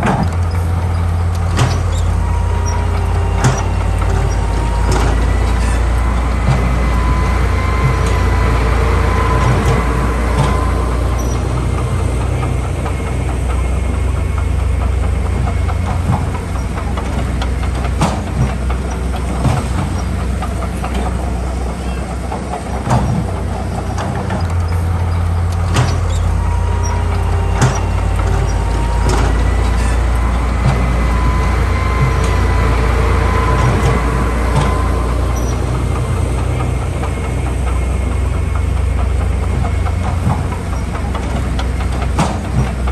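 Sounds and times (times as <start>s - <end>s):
diesel engine rumble: 0.0s - 42.9s
metallic clanks and knocks: 0.0s - 42.9s.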